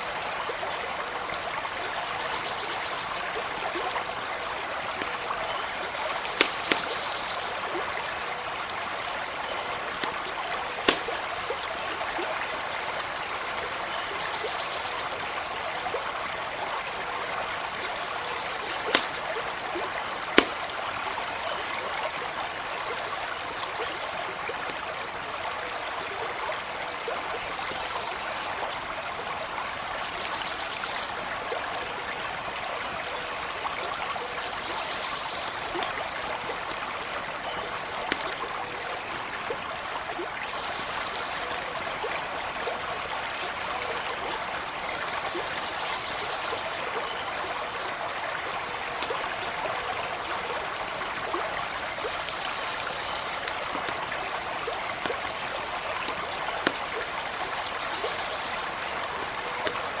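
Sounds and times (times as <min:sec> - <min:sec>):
campfire crackling pops: 0:00.0 - 0:01.9, 0:03.2 - 0:13.8, 0:17.0 - 0:25.1, 0:35.4 - 0:42.5, 0:48.6 - 0:52.2, 0:53.2 - 0:58.3, 0:59.0 - 1:00.0
creek running over stones: 0:00.0 - 1:00.0.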